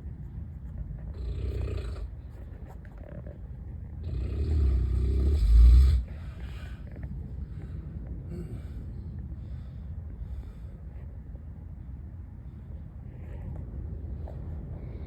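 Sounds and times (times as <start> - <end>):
man snoring loudly: 4.0 - 6.1
soft breath: 6.0 - 15.0.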